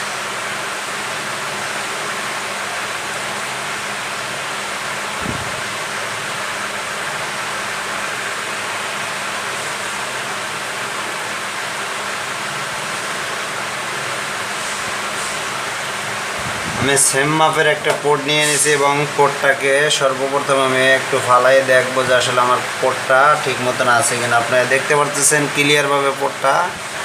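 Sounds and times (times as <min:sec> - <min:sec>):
whooshing air noise: 0:05.0 - 0:06.9, 0:14.5 - 0:19.4.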